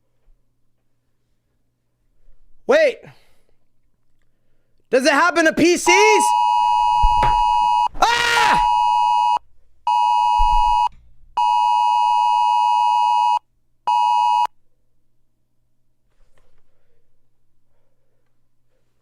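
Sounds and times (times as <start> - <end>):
voice crying out: 8.0 - 8.9
two-tone alert beeps: 8.7 - 14.5.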